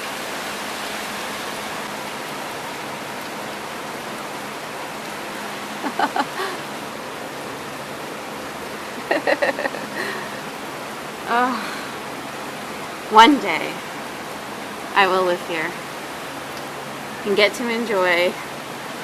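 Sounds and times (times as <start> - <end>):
heavy rain pouring: 0.0 - 19.0
person speaking: 5.8 - 6.6, 11.3 - 11.8, 13.1 - 13.8.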